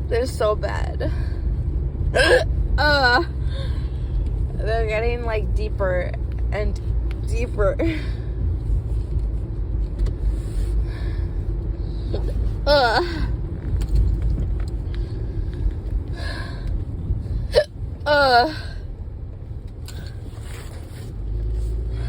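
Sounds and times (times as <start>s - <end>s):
car rumble inside cabin: 0.0s - 22.0s
woman hiccuping: 2.2s - 3.3s, 12.2s - 13.3s, 17.5s - 18.7s.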